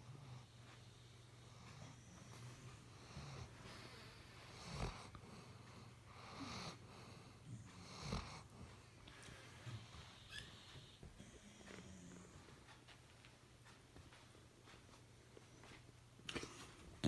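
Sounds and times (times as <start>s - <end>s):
dog snoring: 0.0s - 12.6s.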